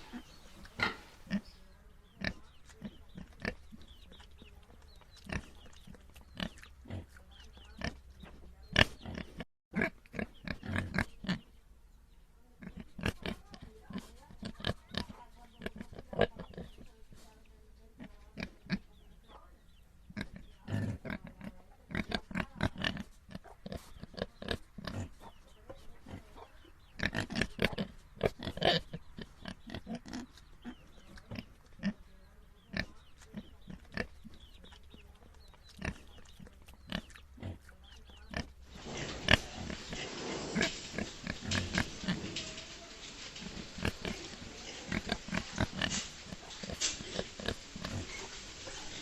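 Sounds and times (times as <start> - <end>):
pigs grunting: 0.0 - 3.7, 8.7 - 11.4, 35.7 - 49.0.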